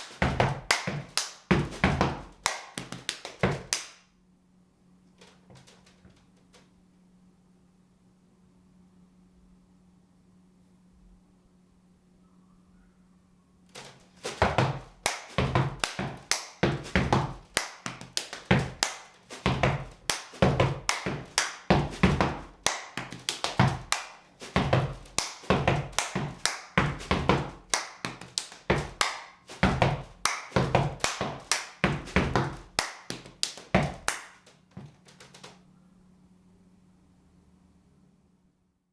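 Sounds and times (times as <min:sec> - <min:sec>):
rhythmic foot stomps: 0:00.0 - 0:03.9, 0:13.8 - 0:35.5
hand claps: 0:00.0 - 0:04.0, 0:13.8 - 0:35.6.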